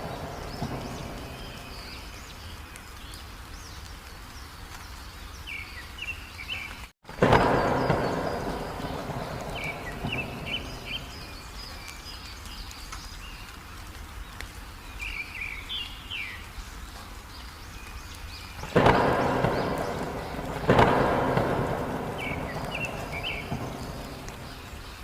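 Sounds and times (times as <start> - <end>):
thunderclap: 0.0 - 2.4, 7.0 - 11.9, 18.6 - 25.0
bird chirps: 0.0 - 3.9, 4.9 - 13.6, 17.4 - 25.0
heavy rain hissing: 0.0 - 25.0.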